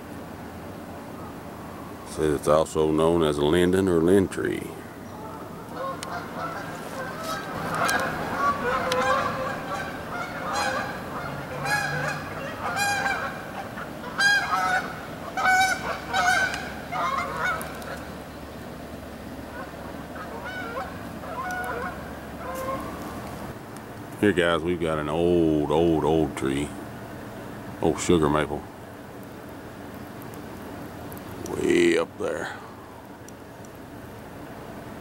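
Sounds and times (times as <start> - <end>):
geese honking: 1.1 - 23.6.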